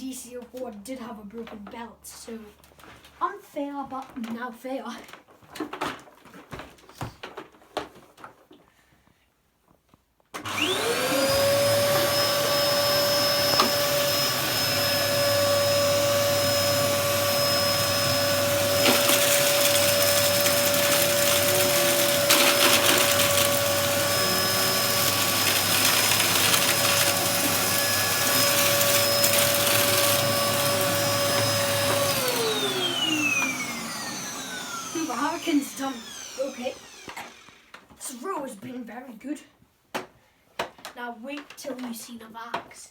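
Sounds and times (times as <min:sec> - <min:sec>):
vacuum cleaner motor whining: 0:10.4 - 0:37.8.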